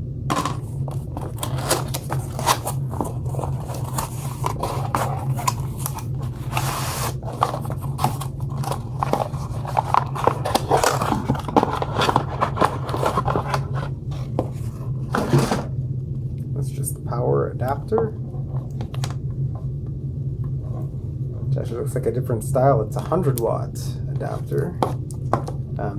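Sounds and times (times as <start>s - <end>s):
steady low hum: 0.0s - 25.9s
cardboard scraping and rustling: 0.3s - 15.8s.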